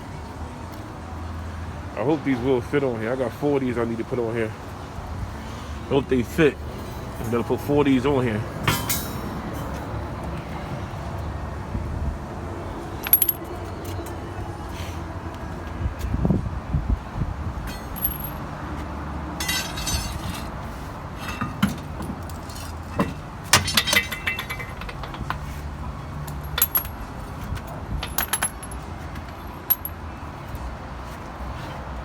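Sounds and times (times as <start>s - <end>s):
metallic clinks of tools: 13.0s - 13.4s, 17.7s - 18.4s, 23.6s - 25.4s, 26.3s - 27.0s, 28.0s - 30.0s.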